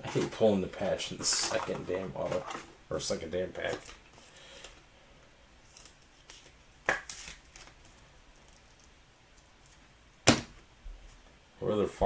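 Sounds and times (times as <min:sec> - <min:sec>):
card packs rustling: 0:00.0 - 0:04.8.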